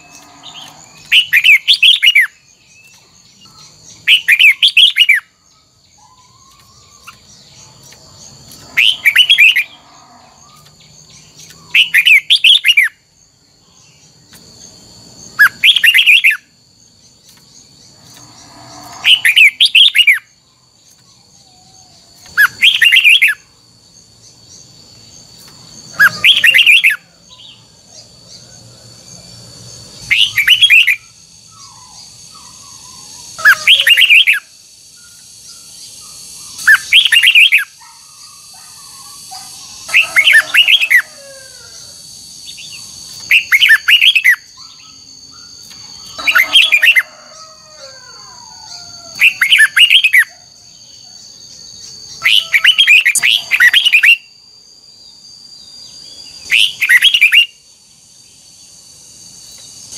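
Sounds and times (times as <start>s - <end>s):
soft gliding bird calls: 0.0s - 13.0s, 17.3s - 20.3s, 30.0s - 51.2s.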